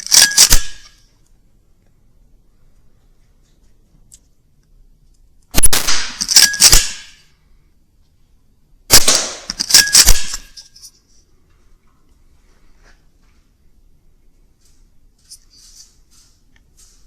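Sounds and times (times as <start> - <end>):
air rifle shots: 5.5 - 7.2, 8.9 - 10.5.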